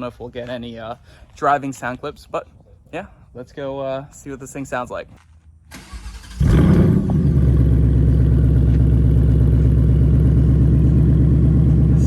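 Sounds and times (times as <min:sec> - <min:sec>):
car engine starting and idling: 0:05.7 - 0:12.0.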